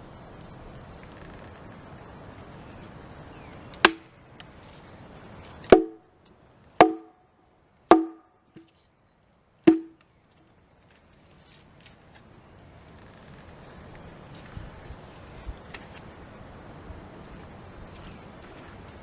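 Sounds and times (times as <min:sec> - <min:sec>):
hatchet chopping wood: 0:03.8 - 0:04.0, 0:06.8 - 0:07.1, 0:07.9 - 0:08.7, 0:09.7 - 0:10.0.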